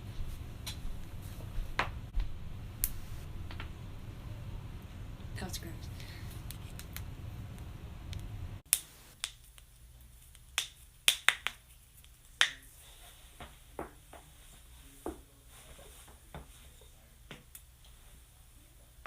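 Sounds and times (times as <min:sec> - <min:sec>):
low hum: 0:00.0 - 0:08.6.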